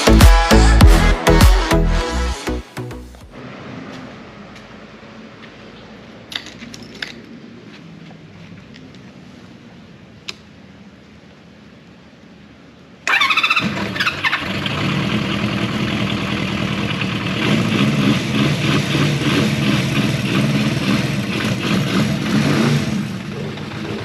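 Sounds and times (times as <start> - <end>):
motorcycle engine revving: 13.1 - 24.0.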